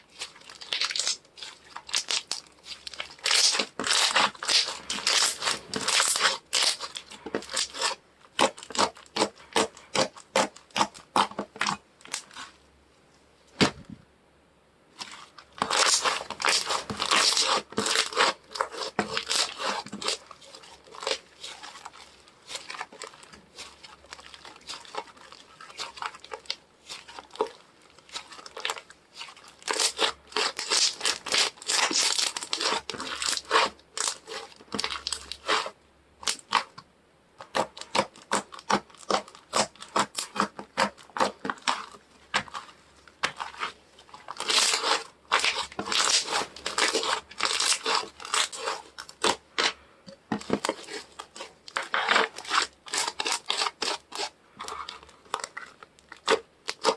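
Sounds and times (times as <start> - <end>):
slime crackling and popping: 0.0 - 12.5, 15.0 - 36.8, 37.4 - 56.9.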